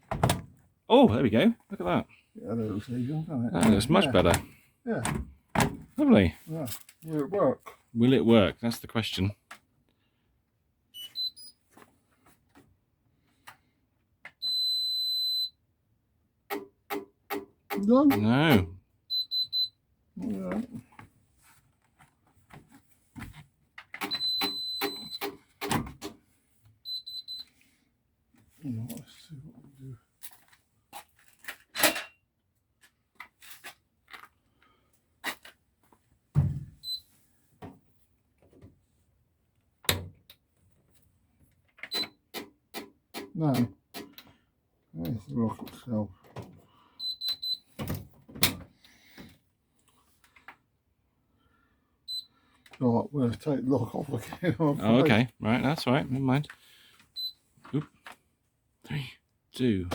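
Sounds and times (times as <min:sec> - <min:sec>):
washing machine beeps: 0:11.0 - 0:11.6, 0:14.4 - 0:15.6, 0:19.1 - 0:19.8, 0:24.0 - 0:25.3, 0:26.8 - 0:27.5, 0:36.8 - 0:37.1, 0:41.9 - 0:42.2, 0:47.0 - 0:47.8, 0:52.1 - 0:52.3, 0:57.2 - 0:57.4
long steady beep: 0:14.4 - 0:15.6, 0:19.1 - 0:19.8, 0:24.1 - 0:25.2, 0:26.9 - 0:27.5, 0:47.0 - 0:47.7, 0:52.1 - 0:52.3.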